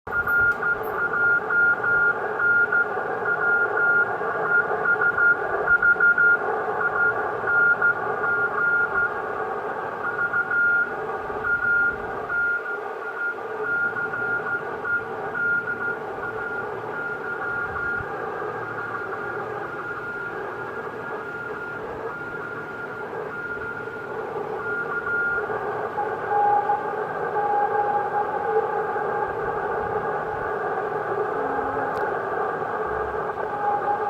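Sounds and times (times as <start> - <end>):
morse code beeping tone: 0.1 - 9.1, 11.5 - 25.5
radio band noise hiss: 25.4 - 34.0.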